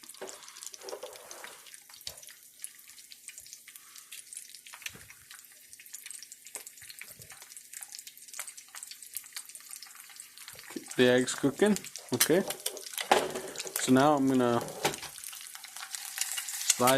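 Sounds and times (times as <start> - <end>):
egg sizzling in oil: 0.0 - 16.9.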